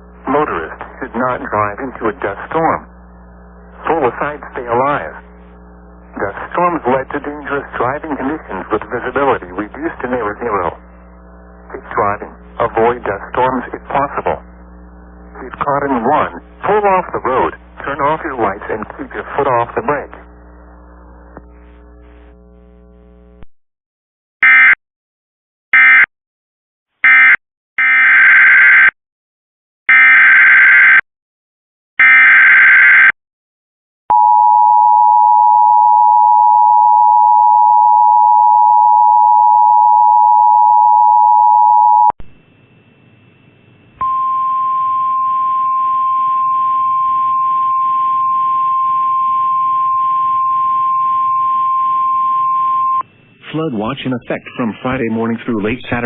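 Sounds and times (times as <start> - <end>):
static hiss: 3.4 - 23.4
single steady tone: 34.1 - 53.5
two-tone attention signal: 44.0 - 53.0.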